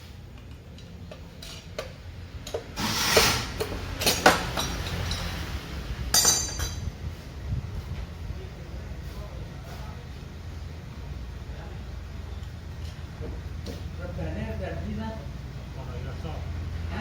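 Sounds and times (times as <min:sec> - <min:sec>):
metal tools and parts clinking: 0:00.4 - 0:02.7, 0:03.6 - 0:06.9
ringing metal clatter: 0:06.1 - 0:06.9.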